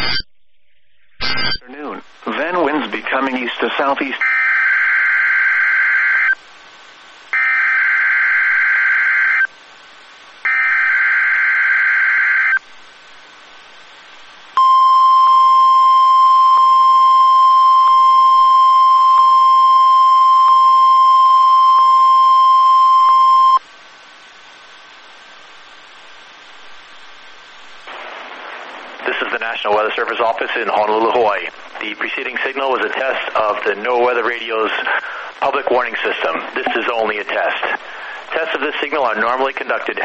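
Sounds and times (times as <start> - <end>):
warbling digital data tones: 0.0 - 1.6
faint radio static: 1.0 - 4.4, 12.3 - 40.0.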